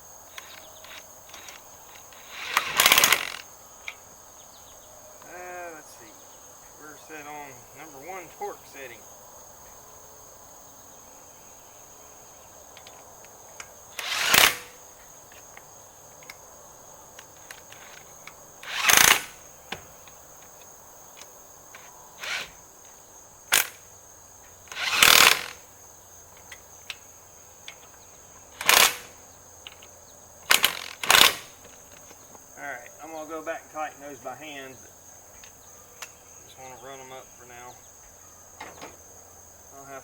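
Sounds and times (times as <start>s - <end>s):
high insect trill: 0.0s - 40.0s
impact wrench bursts: 0.3s - 3.5s, 13.6s - 14.8s, 17.4s - 19.8s, 21.8s - 22.6s, 23.5s - 23.9s, 24.6s - 25.7s, 28.5s - 31.8s.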